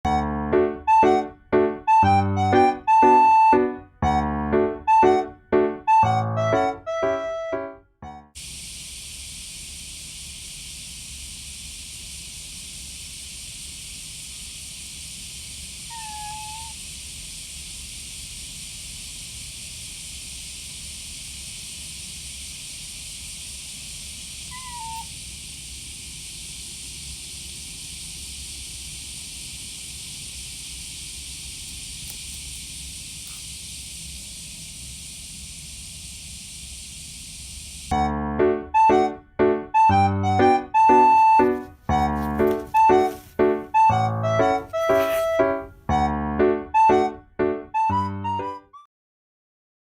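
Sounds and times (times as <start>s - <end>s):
background music: 0.1s - 8.4s, 37.9s - 48.8s
cicadas singing: 15.4s - 18.5s, 22.5s - 35.0s, 39.8s - 45.5s
soft pitched calls: 15.8s - 16.9s, 24.5s - 25.2s.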